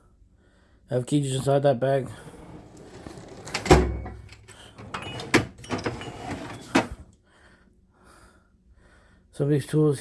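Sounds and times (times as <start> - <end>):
tools clunking in metal chest: 2.6 - 7.1.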